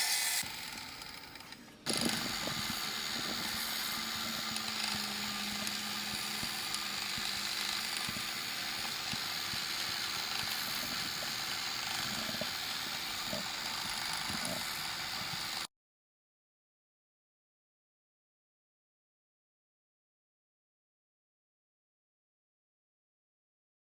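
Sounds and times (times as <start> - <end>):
wood lathe turning bowl: 0.0 - 15.7.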